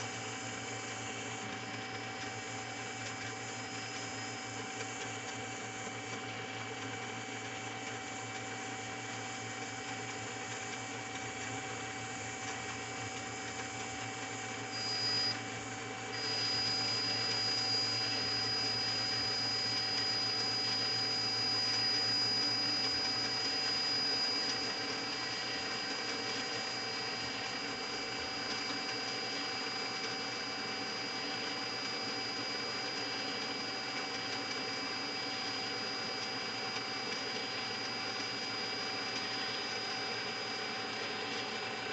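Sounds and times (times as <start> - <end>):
lathe motor whine: 0.0 - 41.9.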